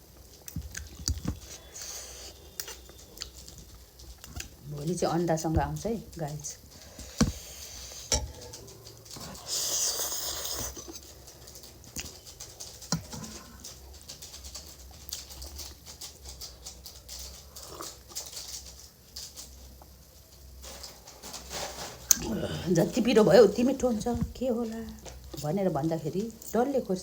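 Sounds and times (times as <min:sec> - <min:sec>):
chewing and mouth clicks: 0:00.2 - 0:05.0, 0:06.0 - 0:19.9
noodle slurp: 0:09.2 - 0:11.0.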